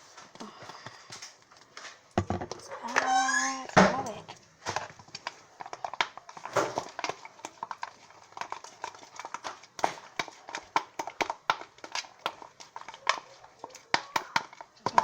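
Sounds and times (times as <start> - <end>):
fork stirring slime: 4.1 - 15.0.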